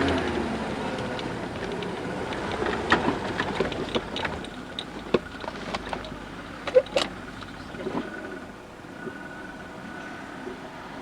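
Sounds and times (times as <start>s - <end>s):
vehicle running on bridge: 0.0s - 11.0s
knocks and rattles: 1.0s - 8.0s.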